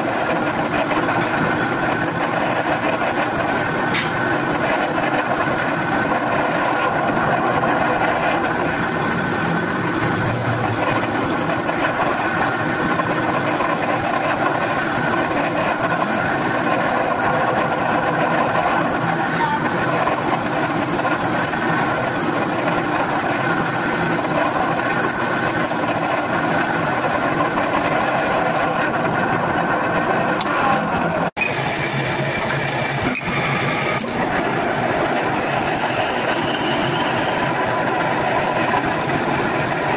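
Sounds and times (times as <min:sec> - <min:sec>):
machine motor running: 0:00.0 - 0:29.0.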